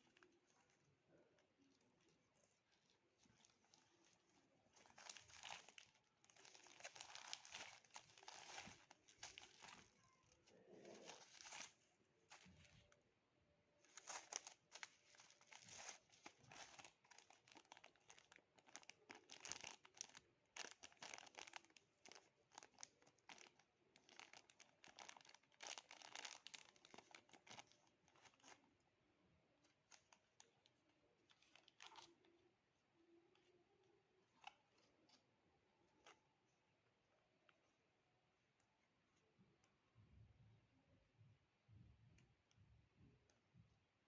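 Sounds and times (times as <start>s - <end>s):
packaging crinkling and tearing: 4.7s - 12.6s, 13.9s - 28.6s, 31.3s - 32.2s.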